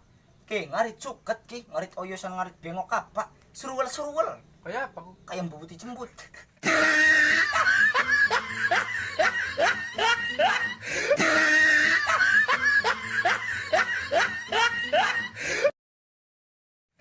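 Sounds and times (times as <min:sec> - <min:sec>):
laughing sound effect: 0:06.6 - 0:15.4.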